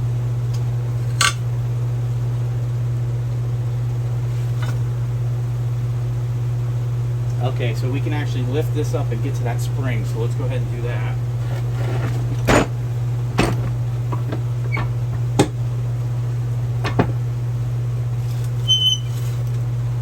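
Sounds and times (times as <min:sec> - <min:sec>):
low steady hum: 0:00.0 - 0:20.0
metal jack clunking: 0:11.4 - 0:12.8, 0:13.4 - 0:15.6, 0:16.8 - 0:17.2
high squeak: 0:18.6 - 0:19.3.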